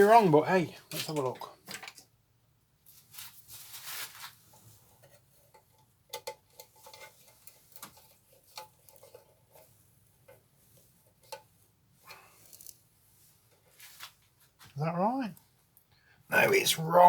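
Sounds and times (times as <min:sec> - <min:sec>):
rustling scrape: 0:02.9 - 0:05.1, 0:12.3 - 0:14.7
small parts clicking and tapping: 0:05.0 - 0:09.6, 0:12.4 - 0:12.8.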